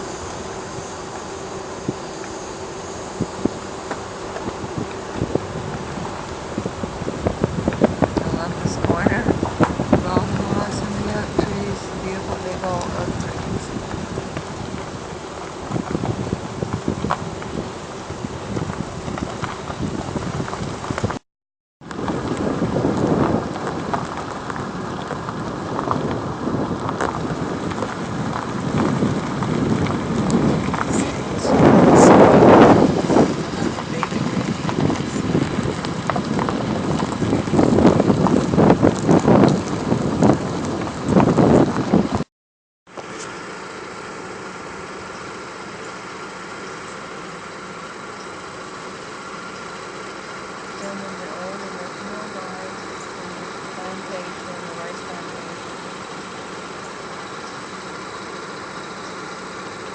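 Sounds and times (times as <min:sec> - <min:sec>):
car engine running: 0:00.0 - 0:21.2, 0:21.8 - 0:42.3, 0:42.9 - 0:59.9
gravel crackles: 0:00.0 - 0:21.2, 0:21.8 - 0:42.3, 0:42.9 - 0:59.9
tyre and road rumble: 0:00.0 - 0:21.2, 0:21.8 - 0:42.3, 0:42.9 - 0:59.9
wind on microphone: 0:00.0 - 0:21.2, 0:21.8 - 0:42.3.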